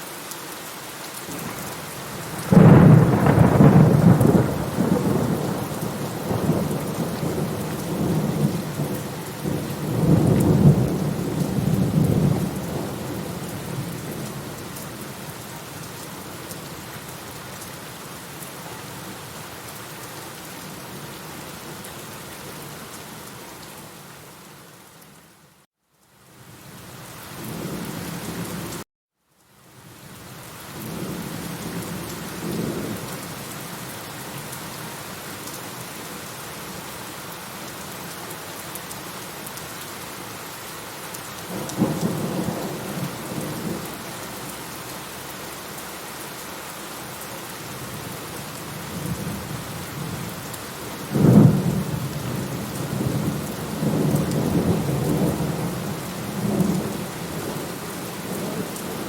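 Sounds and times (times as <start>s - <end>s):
steady rain: 0.0s - 59.0s
rolling thunder: 2.4s - 13.9s.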